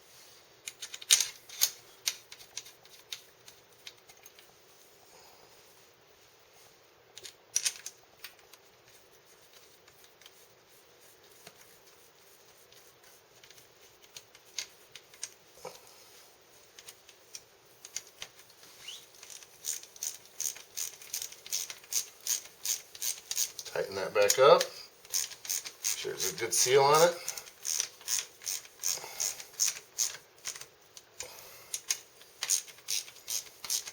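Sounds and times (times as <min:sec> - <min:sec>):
wrench tightening bolts: 0:19.2 - 0:23.7, 0:25.1 - 0:30.7, 0:31.7 - 0:33.9
metallic clicks of hand tools: 0:27.3 - 0:33.9.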